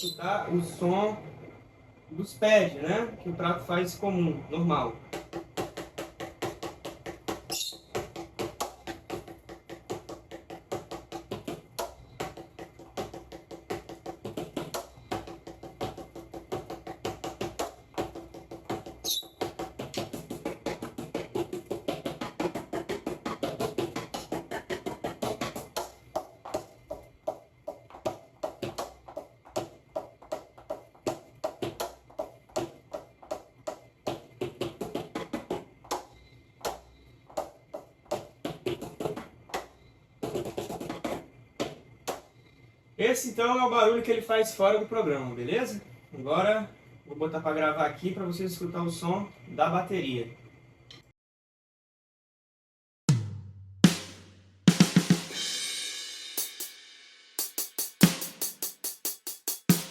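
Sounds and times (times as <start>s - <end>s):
drumsticks knocking on pads: 5.1s - 42.3s.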